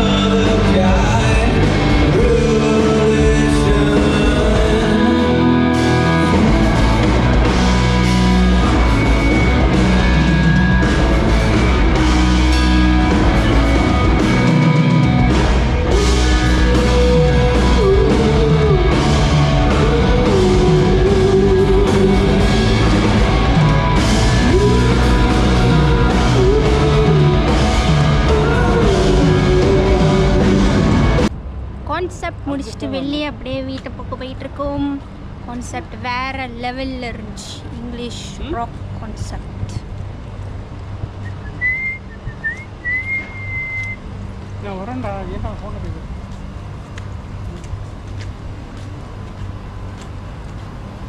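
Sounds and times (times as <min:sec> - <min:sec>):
bending melody line: 0:00.0 - 0:31.3
live rock band playing: 0:00.0 - 0:31.3.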